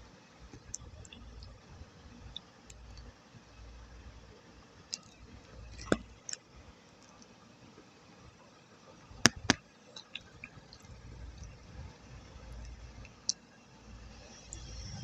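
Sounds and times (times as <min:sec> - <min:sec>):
small ticks: 0:04.9 - 0:06.4
wet clay squishing: 0:04.9 - 0:06.5, 0:09.2 - 0:13.4.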